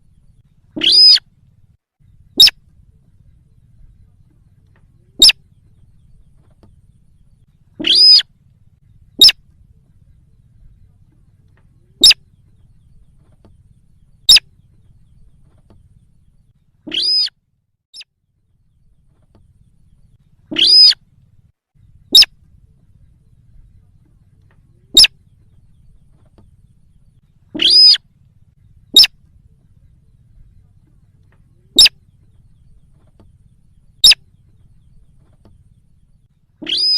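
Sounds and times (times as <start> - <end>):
longer bird call rich in overtones: 0.1 - 1.3, 16.0 - 17.4, 19.6 - 21.0, 26.8 - 29.2, 35.6 - 36.9
sharp brief bird calls: 0.6 - 1.3, 2.0 - 2.7, 7.7 - 8.3, 9.0 - 9.5, 12.0 - 13.0, 16.8 - 17.4, 20.4 - 21.0, 21.8 - 22.4, 24.9 - 25.9, 27.5 - 28.1, 28.7 - 29.2, 31.7 - 32.8, 34.0 - 35.1, 36.6 - 36.9.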